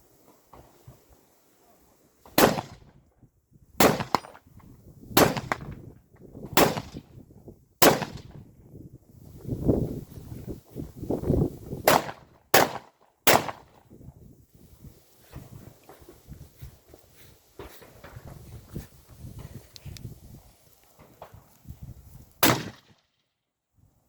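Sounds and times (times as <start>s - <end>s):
carbine gunshots: 2.3s - 2.9s, 3.8s - 4.4s, 5.2s - 5.8s, 6.6s - 7.1s, 7.8s - 8.4s, 11.8s - 13.8s, 22.4s - 23.0s.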